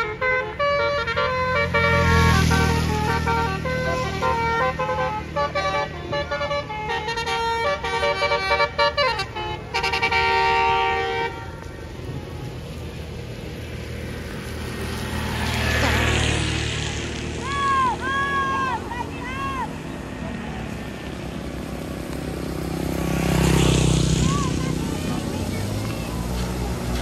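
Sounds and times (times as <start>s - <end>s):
multi-tone bus horn tune: 0.0s - 12.0s
engine and road noise: 0.0s - 27.0s.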